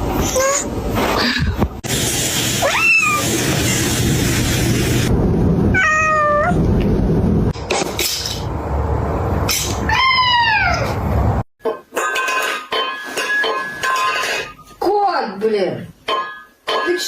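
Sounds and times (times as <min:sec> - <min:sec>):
cat meowing: 0:02.6 - 0:03.3, 0:05.7 - 0:06.6.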